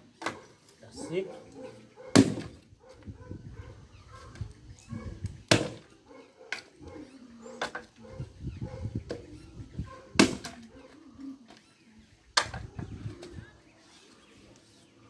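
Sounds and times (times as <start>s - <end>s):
axe chopping firewood: 2.1s - 2.6s, 5.5s - 5.9s, 10.2s - 10.6s.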